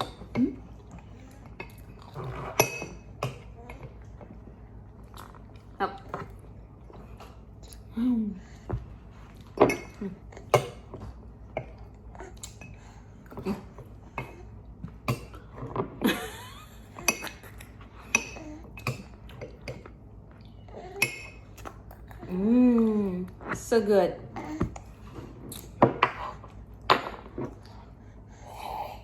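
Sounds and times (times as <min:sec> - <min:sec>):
cutlery clinking on a plate: 0:01.6 - 0:03.5.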